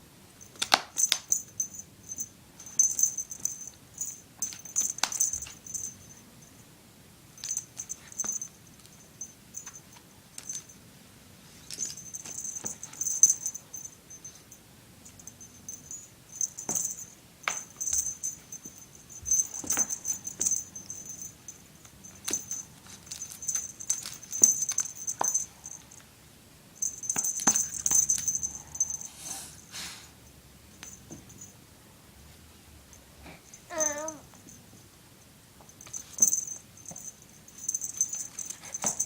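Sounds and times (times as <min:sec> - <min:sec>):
jingling cat toy rattling: 0:00.4 - 0:06.5, 0:07.4 - 0:10.8, 0:11.7 - 0:26.0, 0:26.8 - 0:29.2, 0:33.7 - 0:34.6, 0:35.7 - 0:39.0.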